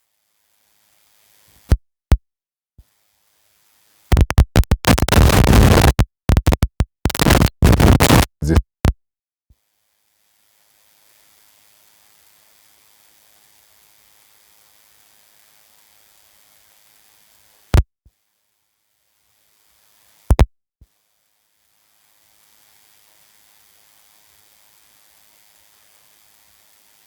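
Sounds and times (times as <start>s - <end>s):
faint hiss: 2.8s - 4.2s, 9.7s - 17.7s, 18.4s - 20.3s, 20.9s - 27.0s
harsh scratching noise: 4.1s - 8.9s.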